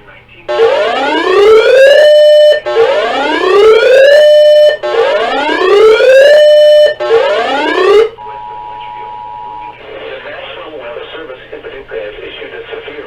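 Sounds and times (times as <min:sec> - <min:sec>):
buzzy whooping siren tone: 0:00.5 - 0:08.2.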